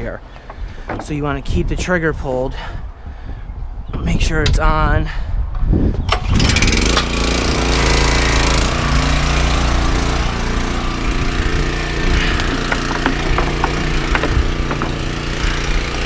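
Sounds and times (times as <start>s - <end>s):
pressure washer engine running: 6.8s - 16.0s.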